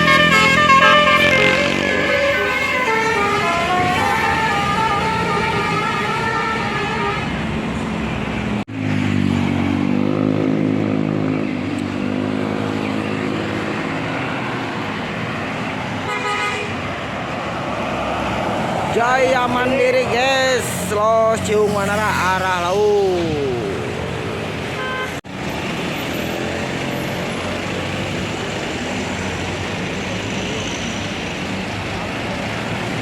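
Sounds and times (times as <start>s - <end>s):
low bending horn tones: 0.0s - 7.4s
bus melody horn playing a tune: 0.0s - 7.6s, 16.0s - 16.8s, 24.8s - 25.2s.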